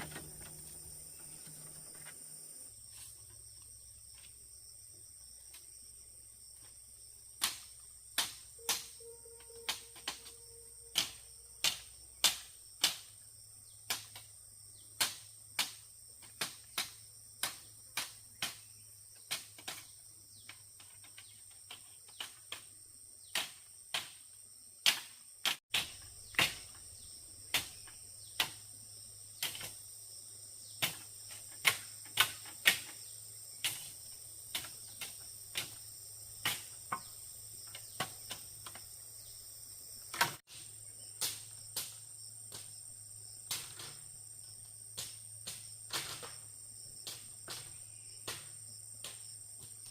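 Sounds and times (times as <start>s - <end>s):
insect chorus: 0.0s - 49.9s.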